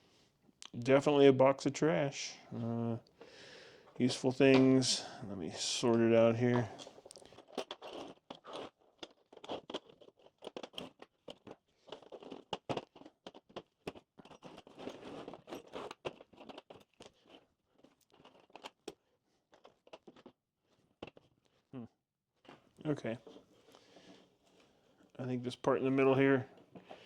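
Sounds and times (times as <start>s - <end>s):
metal hardware clinking: 4.0s - 4.9s.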